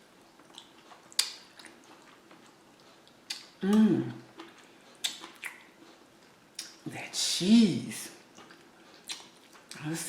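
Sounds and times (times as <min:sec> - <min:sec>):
person humming mmm: 0:03.6 - 0:04.3.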